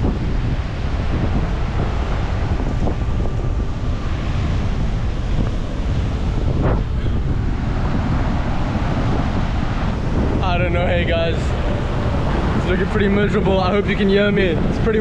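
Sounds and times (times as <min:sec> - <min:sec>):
wind buffeting microphone: 0:00.0 - 0:15.0
surf breaking on rocks: 0:00.8 - 0:14.8.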